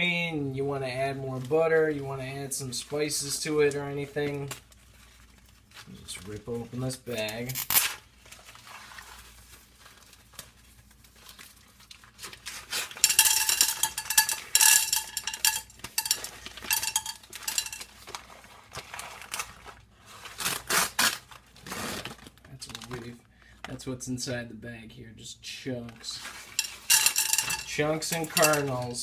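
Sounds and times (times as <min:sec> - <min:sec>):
paper bag tearing and crinkling: 0:04.3 - 0:13.0, 0:18.0 - 0:23.1
cookware clinking: 0:13.0 - 0:17.9, 0:26.6 - 0:28.8.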